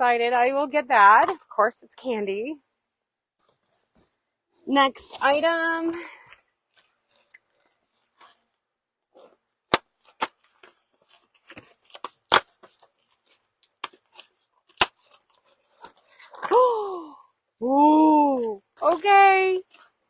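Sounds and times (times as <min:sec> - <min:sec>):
packaging crackles and snaps: 0:09.2 - 0:16.7, 0:18.4 - 0:20.0
packing paper rustling: 0:18.4 - 0:20.0.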